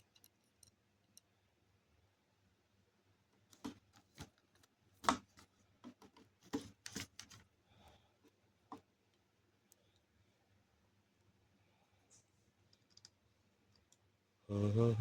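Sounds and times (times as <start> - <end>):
small parts and tools clicking: 0.0 - 1.3, 12.6 - 14.1.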